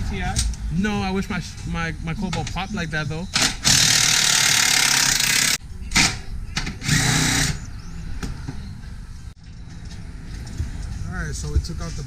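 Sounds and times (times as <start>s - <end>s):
power tool bursts: 3.4s - 6.1s, 6.8s - 7.6s.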